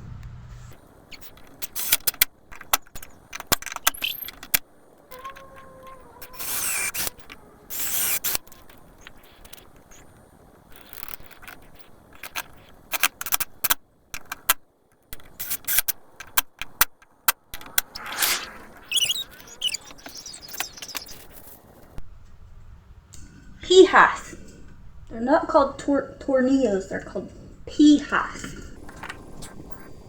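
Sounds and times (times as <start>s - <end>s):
hard objects scraping: 0.6s - 22.0s
clicks knocks and rattles: 0.7s - 18.0s.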